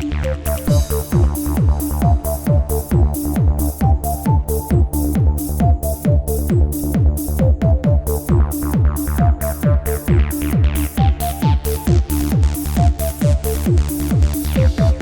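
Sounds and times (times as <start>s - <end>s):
electronic dance music: 0.0s - 15.0s
steady kick drum beat: 0.0s - 15.0s
crisp hi-hats: 0.6s - 7.4s.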